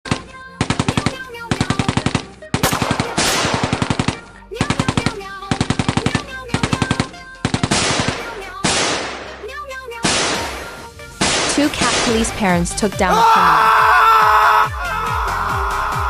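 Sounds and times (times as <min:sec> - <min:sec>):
machine-gun fire bursts: 0:00.1 - 0:09.4, 0:10.0 - 0:12.4.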